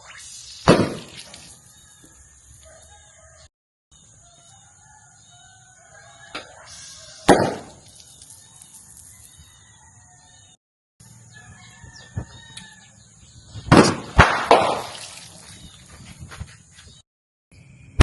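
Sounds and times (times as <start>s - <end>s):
firecracker bangs: 0.6s - 1.3s, 7.2s - 7.8s, 13.7s - 15.1s
rooster crowing: 1.7s - 3.5s, 4.2s - 7.3s, 9.1s - 13.0s.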